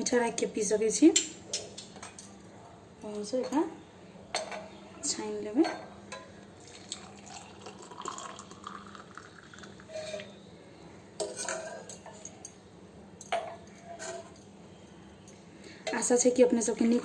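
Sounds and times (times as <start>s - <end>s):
liquid trickling into a cup: 6.6s - 10.3s.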